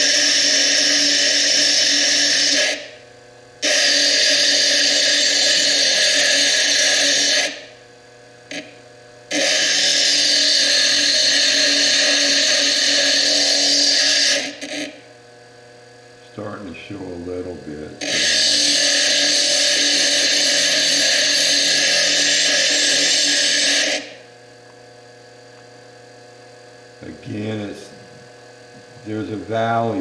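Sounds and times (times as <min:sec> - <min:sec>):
disc grinding stone: 0:00.0 - 0:02.9, 0:03.6 - 0:07.7, 0:09.3 - 0:15.0, 0:18.0 - 0:24.2
lathe motor humming: 0:09.5 - 0:15.2, 0:16.2 - 0:24.4, 0:26.8 - 0:30.0.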